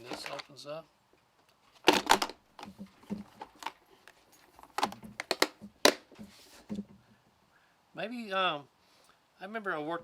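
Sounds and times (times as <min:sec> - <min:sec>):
plastic toolbox clicks and knocks: 0:01.9 - 0:03.8, 0:04.6 - 0:06.9.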